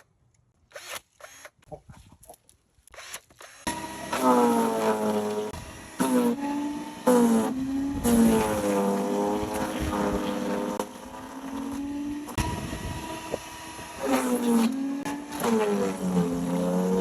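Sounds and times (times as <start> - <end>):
wood chipper engine under load: 3.7 - 17.0.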